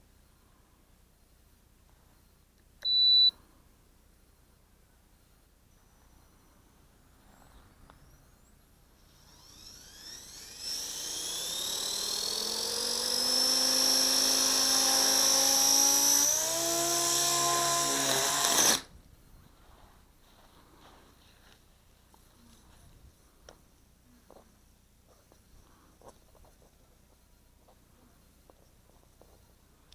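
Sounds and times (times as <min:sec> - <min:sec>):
rc helicopter motor whine: 0:09.0 - 0:18.9.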